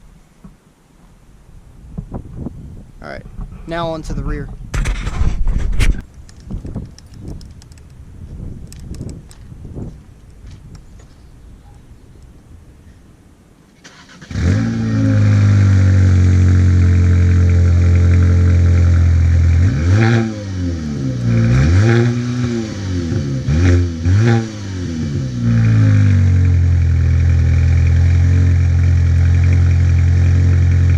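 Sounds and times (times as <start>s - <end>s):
car engine starting: 13.8s - 30.9s
car engine revving: 13.9s - 30.9s
car engine idling: 14.7s - 19.7s, 25.3s - 30.9s.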